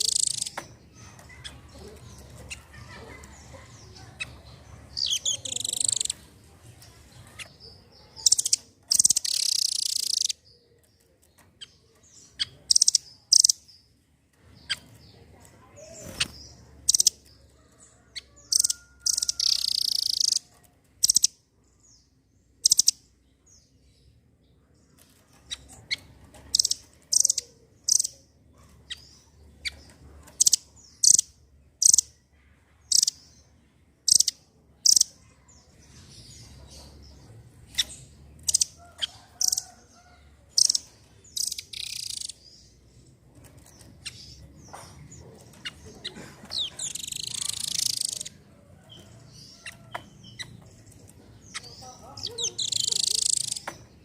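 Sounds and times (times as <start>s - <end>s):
bird chipping calls: 0.0s - 6.3s, 7.2s - 10.8s, 11.4s - 13.8s, 15.9s - 21.3s, 22.6s - 23.1s, 25.4s - 32.2s, 32.9s - 33.4s, 34.1s - 35.2s, 37.6s - 42.9s, 43.5s - 54.0s.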